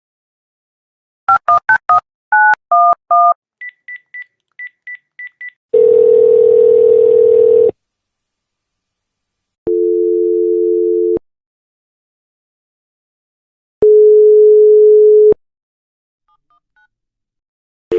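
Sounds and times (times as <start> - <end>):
telephone line tone: 5.7 - 7.8, 9.7 - 11.2, 13.8 - 15.4
telephone ringing tone: 5.7 - 7.8, 9.7 - 11.2.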